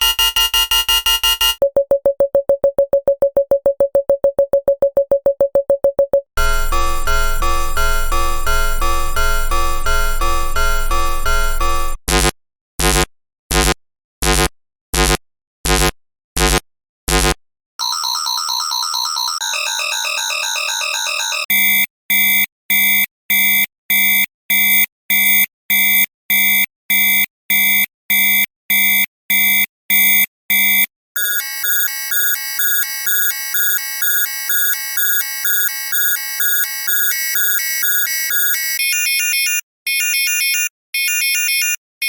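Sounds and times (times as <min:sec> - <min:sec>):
rapid beeping alarm: 0:00.0 - 0:12.0, 0:19.4 - 0:21.5, 0:31.2 - 0:39.6
fast-warbling alarm tone: 0:17.8 - 0:21.5.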